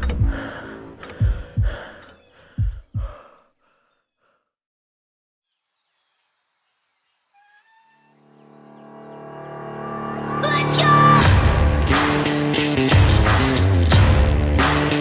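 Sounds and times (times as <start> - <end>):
background music: 0.0 - 2.6, 8.2 - 15.0.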